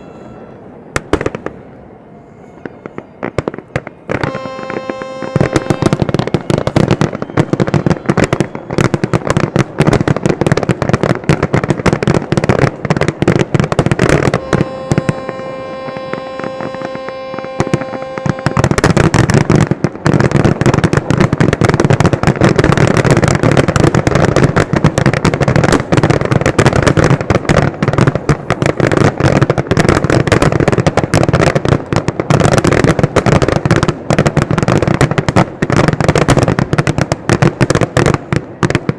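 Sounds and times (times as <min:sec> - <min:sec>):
steady high tone: 0:00.0 - 0:00.9, 0:14.3 - 0:18.8
fireworks bangs and crackling: 0:00.0 - 0:38.9.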